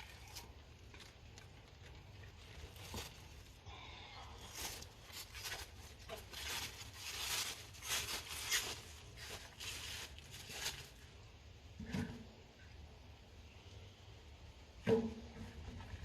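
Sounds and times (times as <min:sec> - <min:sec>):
firewood and bag rustling: 0:00.0 - 0:12.4.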